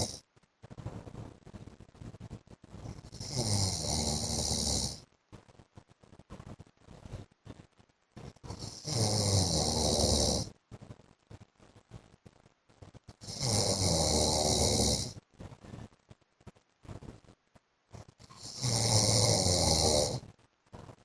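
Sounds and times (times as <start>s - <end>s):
man snoring: 0.0s - 0.2s, 3.0s - 5.0s, 8.5s - 10.5s, 13.2s - 15.2s, 18.3s - 20.3s.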